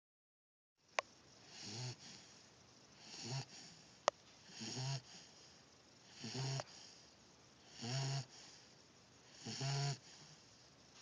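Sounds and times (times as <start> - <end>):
person snoring: 3.0 - 3.8, 4.5 - 5.3, 6.1 - 6.9, 7.7 - 8.4, 9.4 - 10.3.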